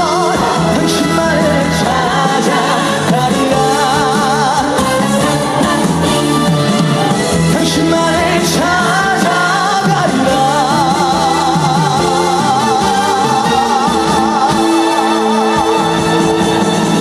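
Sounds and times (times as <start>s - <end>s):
band playing: 0.0s - 17.0s
man singing with vibrato: 0.0s - 17.0s.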